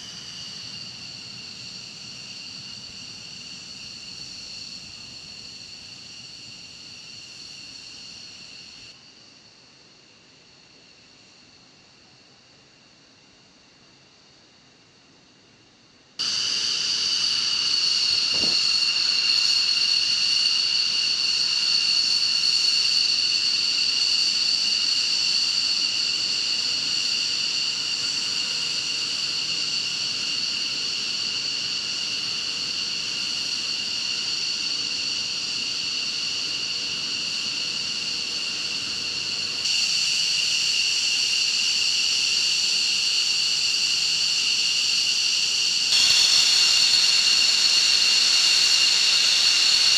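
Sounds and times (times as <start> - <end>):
jet engine whining: 0.0 - 8.9, 16.2 - 42.4, 44.1 - 49.9.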